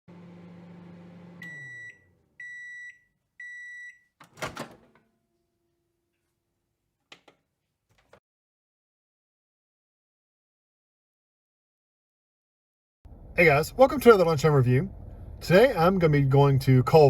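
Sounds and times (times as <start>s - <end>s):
microwave humming: 0.1s - 2.6s
microwave beeps: 0.8s - 4.2s.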